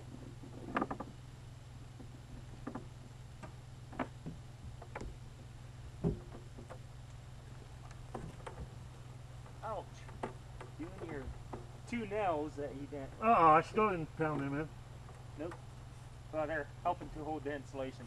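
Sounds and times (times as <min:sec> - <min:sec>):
steady low hum: 0:00.0 - 0:18.0
light knocks and taps: 0:02.0 - 0:08.8.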